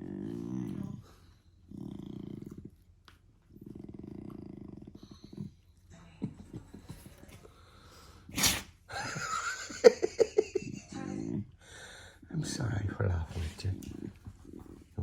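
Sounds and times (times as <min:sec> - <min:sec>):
puppy grumbling: 0:00.0 - 0:02.8, 0:03.5 - 0:05.6, 0:10.1 - 0:11.6, 0:13.3 - 0:15.0
puppy snuffling: 0:13.3 - 0:15.0.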